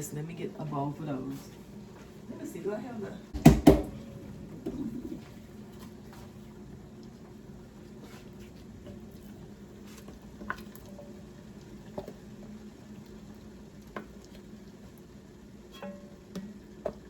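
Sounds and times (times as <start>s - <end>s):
steady low hum: 0.0s - 13.5s
pots boiling and frying: 0.0s - 17.0s.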